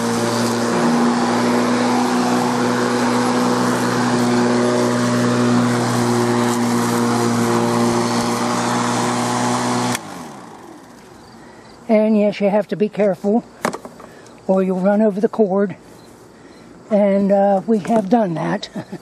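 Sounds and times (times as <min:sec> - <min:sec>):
electric lawn mower running: 0:00.0 - 0:11.8.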